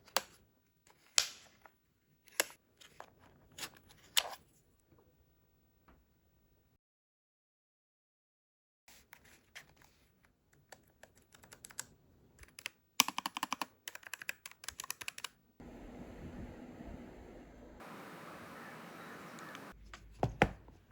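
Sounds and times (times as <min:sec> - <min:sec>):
mechanical keyboard typing: 0:11.0 - 0:11.8, 0:12.4 - 0:15.4
steady hiss: 0:15.6 - 0:19.8.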